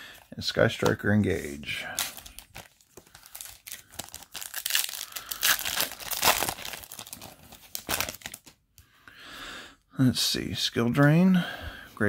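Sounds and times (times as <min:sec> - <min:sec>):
foil pack tearing and crinkling: 0:02.0 - 0:08.5.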